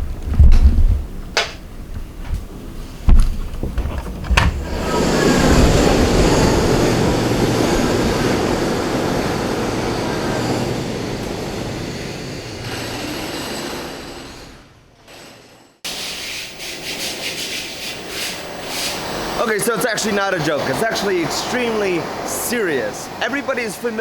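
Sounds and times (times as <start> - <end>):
construction rumbling din: 0.0 - 15.1.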